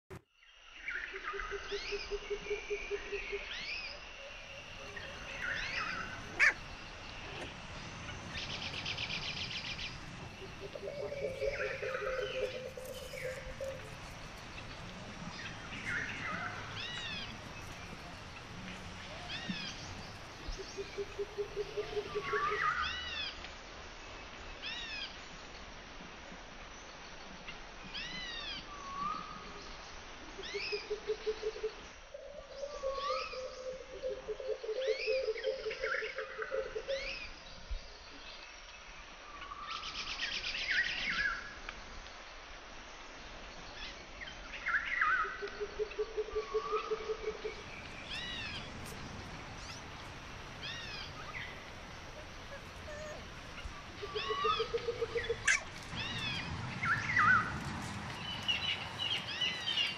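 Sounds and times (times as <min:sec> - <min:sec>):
puppies squeaking and whimpering: 0:52.2 - 0:54.7, 0:55.3 - 0:56.3.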